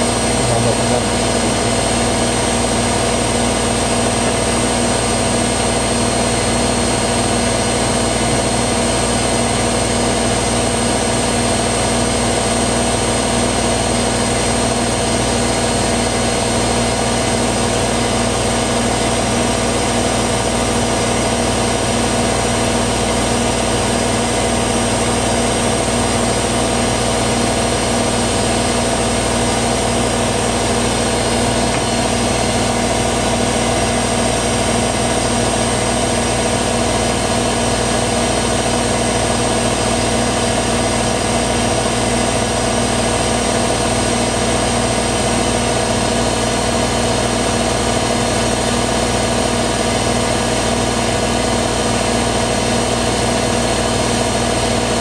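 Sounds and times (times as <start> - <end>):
constant high whine: 0.0 - 37.3
dryer fan drone: 0.0 - 55.0.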